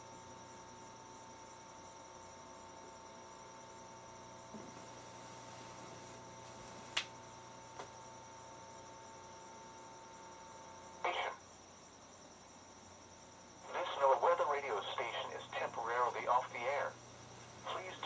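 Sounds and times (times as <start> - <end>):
faint steady hum: 0.0 - 18.0
thin whine: 12.9 - 18.0.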